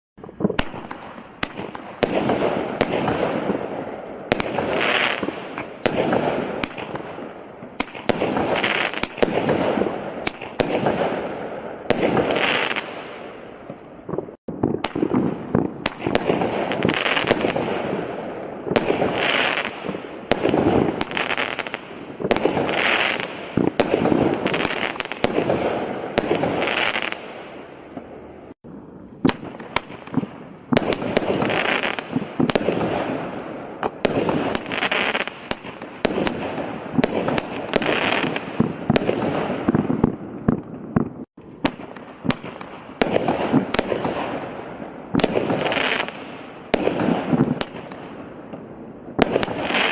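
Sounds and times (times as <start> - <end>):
firework launch shots: 0.3 - 28.1.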